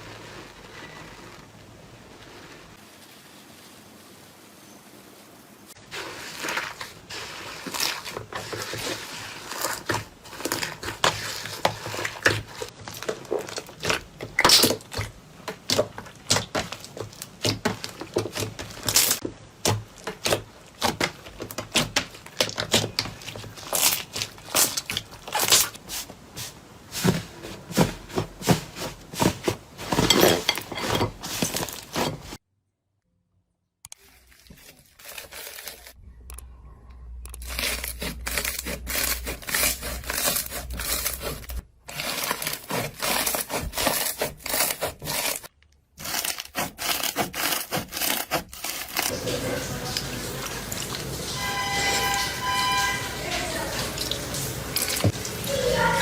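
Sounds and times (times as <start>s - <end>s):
slime crackling and popping: 9.3s - 25.8s.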